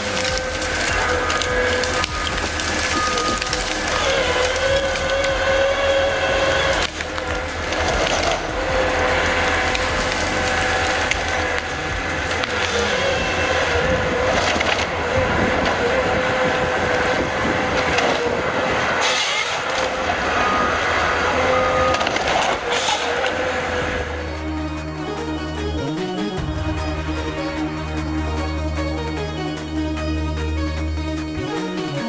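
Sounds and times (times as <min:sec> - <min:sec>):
wood cracking and splintering: 0:00.0 - 0:24.4
heavy forestry machine running: 0:00.0 - 0:32.0.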